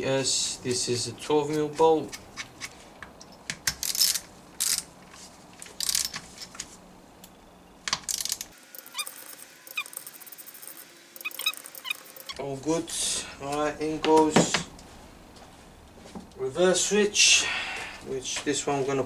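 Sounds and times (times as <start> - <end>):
ratchet wrench clicking: 3.7 - 4.9, 5.8 - 6.2, 8.0 - 12.4.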